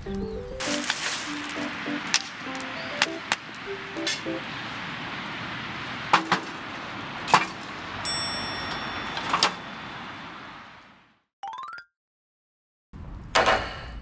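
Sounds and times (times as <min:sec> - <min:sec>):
food sizzling in a wok: 0:00.6 - 0:08.7
metal utensil clinking on pan: 0:06.0 - 0:10.2.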